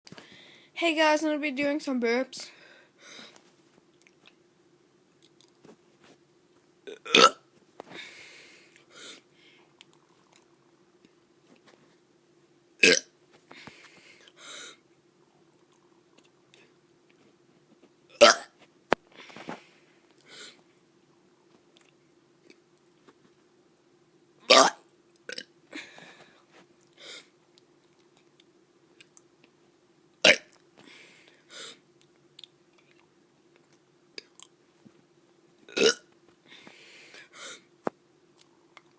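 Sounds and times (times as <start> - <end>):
short breaths: 0.1 - 0.8, 2.5 - 3.5, 7.9 - 9.7, 13.5 - 14.8, 30.8 - 31.8, 36.4 - 37.7
child burping: 6.9 - 7.4, 12.8 - 13.1, 18.2 - 18.6, 24.5 - 25.4, 30.2 - 30.5, 35.7 - 36.1.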